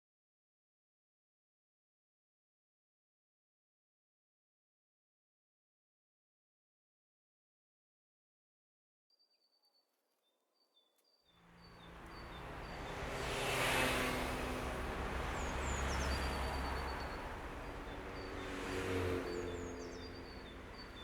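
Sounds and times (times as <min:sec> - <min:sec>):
low traffic rumble: 0:11.4 - 0:21.0
birds chirping: 0:11.5 - 0:21.0.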